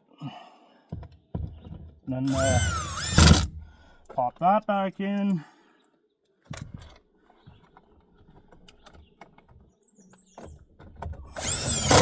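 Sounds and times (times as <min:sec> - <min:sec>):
plastic scraping rasp with squeak: 0:02.3 - 0:03.6, 0:11.3 - 0:12.0.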